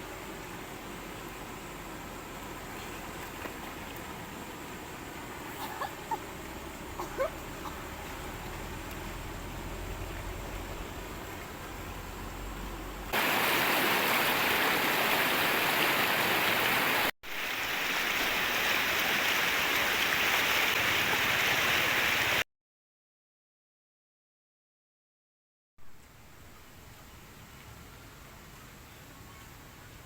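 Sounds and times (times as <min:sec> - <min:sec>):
flowing water rushing: 0:00.0 - 0:22.4.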